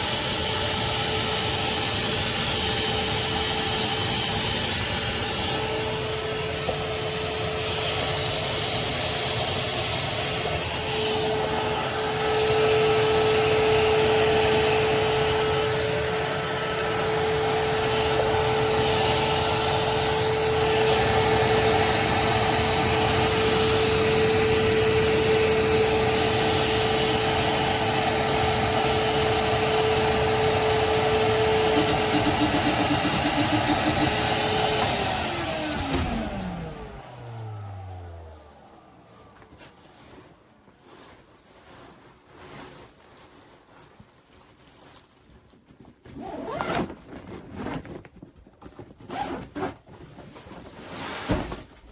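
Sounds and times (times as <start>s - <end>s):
shop vacuum running: 0.0s - 41.8s.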